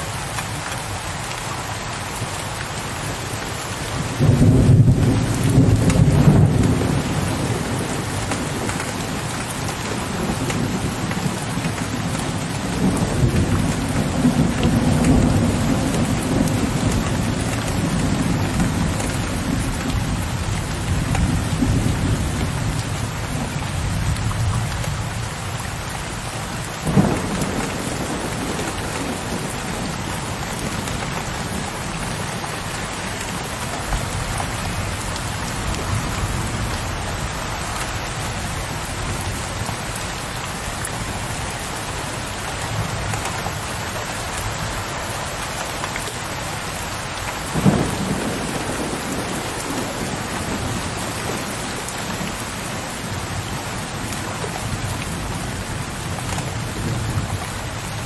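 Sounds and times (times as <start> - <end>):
rain pattering on ledge: 0.0 - 58.0
distant rolling thunder: 3.9 - 25.4, 26.0 - 39.8, 47.4 - 58.0.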